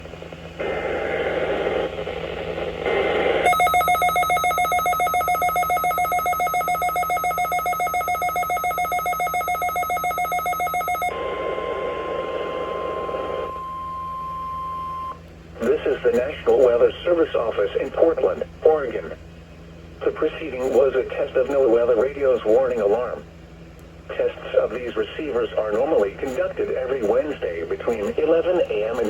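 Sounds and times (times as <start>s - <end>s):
buzzy static-like noise: 0.0s - 3.5s, 15.6s - 19.2s, 24.1s - 29.0s
pulsing electronic alarm tone: 3.5s - 11.2s
faint steady tone: 3.5s - 15.8s.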